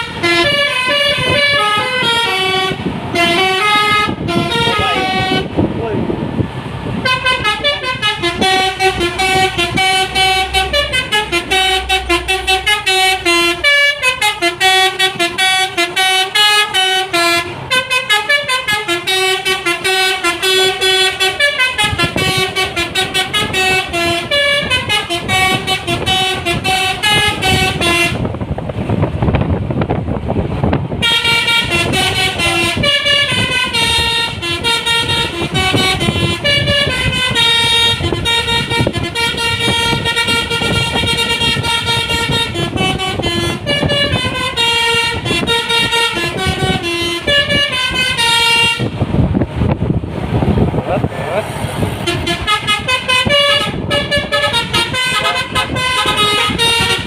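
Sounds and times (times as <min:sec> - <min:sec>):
musical bus horn melody: 0:00.0 - 0:05.6, 0:06.9 - 0:28.5, 0:30.9 - 0:49.2, 0:51.9 - 0:57.0
engine rumble: 0:00.0 - 0:57.0
road rumble: 0:00.0 - 0:57.0.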